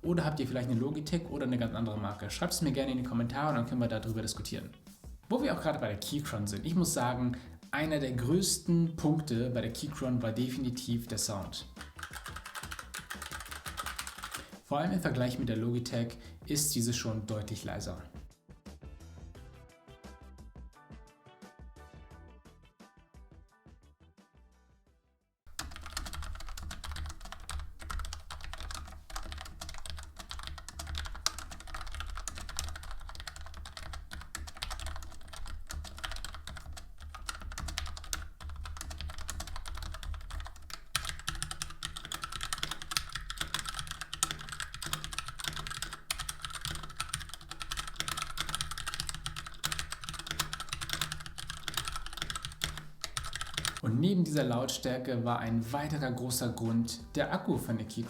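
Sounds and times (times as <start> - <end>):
mechanical keyboard typing: 11.3 - 14.6, 25.5 - 53.8.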